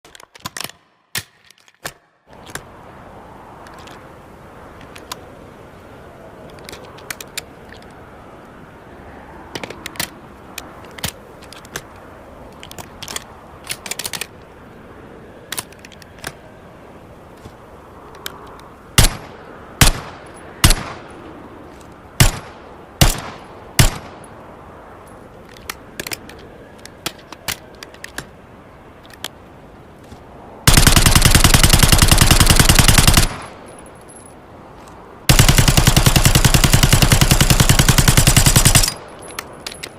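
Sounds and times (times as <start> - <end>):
steady low hiss: 0.1 - 39.9
gunshots: 19.0 - 21.0, 22.2 - 24.2, 30.7 - 33.6, 35.3 - 39.0.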